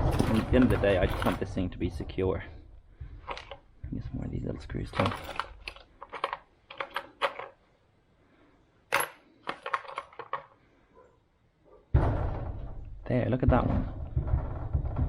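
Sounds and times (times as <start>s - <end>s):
metal screws clinking: 3.2s - 3.6s, 4.8s - 7.6s, 8.9s - 10.6s.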